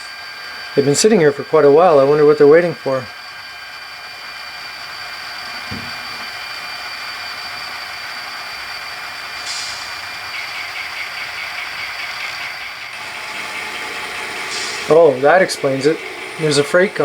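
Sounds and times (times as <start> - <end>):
fast even rattle of train: 0.0 - 17.0
model locomotive engines idling: 0.0 - 17.0
soft thump: 5.7 - 6.0
short hiss: 9.4 - 10.0, 14.4 - 15.2.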